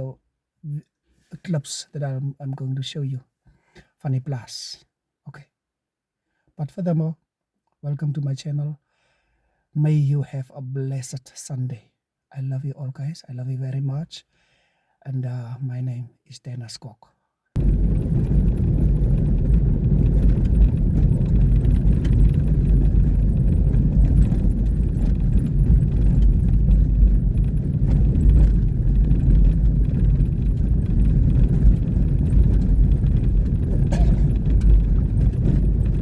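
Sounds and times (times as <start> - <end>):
rattles and clicks: 17.6 - 36.0
road and engine rumble: 17.6 - 36.0.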